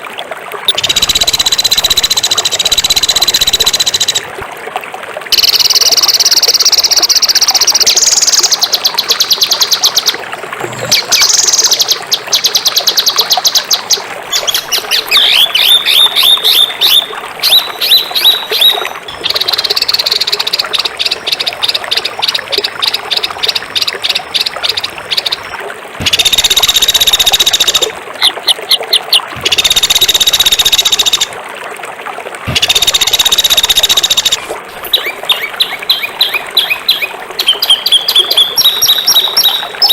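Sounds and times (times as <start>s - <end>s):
songbird chirping: 10.8s - 31.3s, 32.5s - 39.9s.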